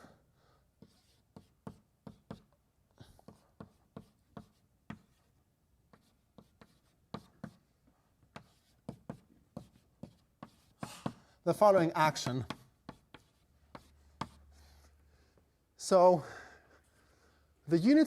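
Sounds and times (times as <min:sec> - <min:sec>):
chalk writing on a blackboard: 0:00.8 - 0:15.0.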